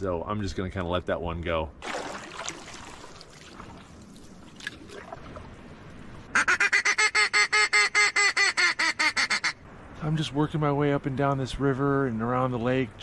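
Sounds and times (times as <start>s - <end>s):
faint outdoor background: 0.0s - 13.0s
duck call quacking notes: 6.3s - 9.6s.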